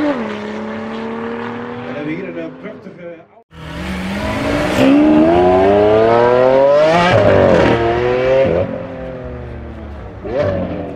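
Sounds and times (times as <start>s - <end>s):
car engine accelerating hard: 3.6s - 10.9s.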